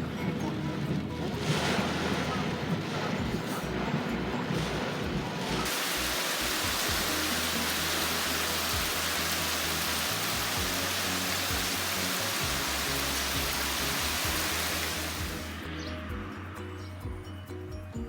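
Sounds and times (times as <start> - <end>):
background music: 0.0 - 18.0
heavy rain pouring: 0.6 - 15.6.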